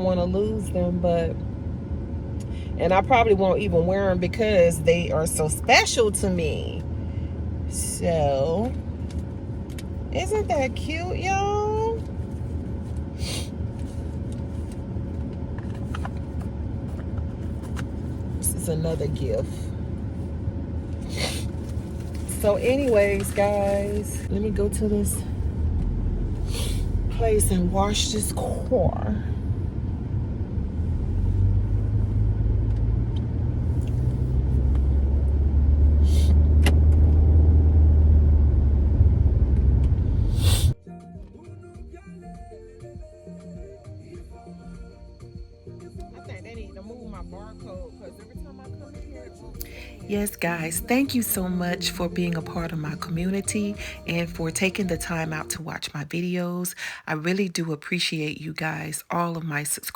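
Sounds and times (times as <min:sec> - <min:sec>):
car engine idling: 0:00.0 - 0:40.8, 0:45.0 - 0:56.2
short hiss: 0:40.3 - 0:40.8.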